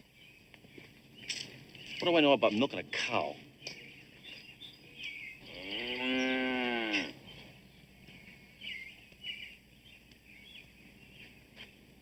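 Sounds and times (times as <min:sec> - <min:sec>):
cow mooing: 0:05.4 - 0:07.2.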